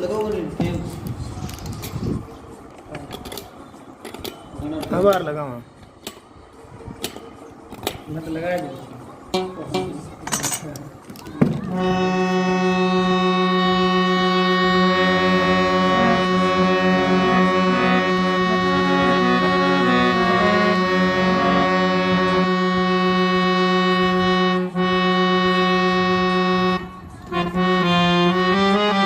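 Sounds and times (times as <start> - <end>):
harmonium playing: 9.3 - 10.2, 11.6 - 29.0.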